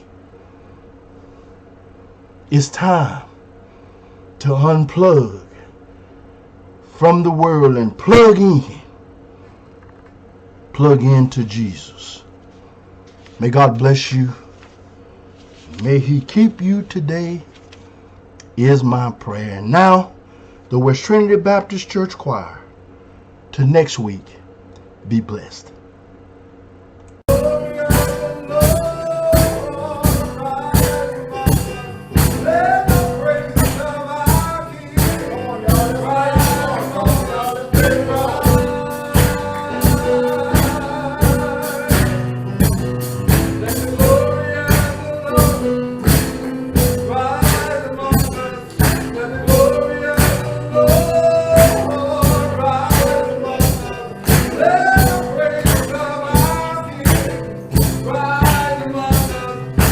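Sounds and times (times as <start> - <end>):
choir singing gospel song: 27.3 - 59.9
percussion beat: 27.3 - 59.9.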